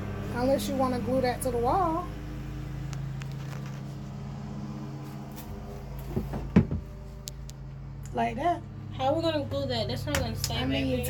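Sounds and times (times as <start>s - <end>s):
steady low hum: 0.0s - 11.0s
clatter of knocks: 6.1s - 6.9s.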